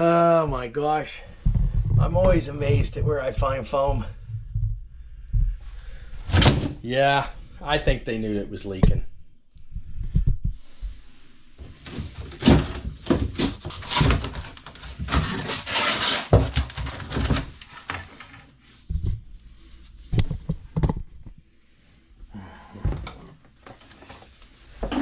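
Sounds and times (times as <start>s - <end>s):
scraping: 11.6s - 18.6s
knocks and clunks on plumbing: 22.8s - 23.8s.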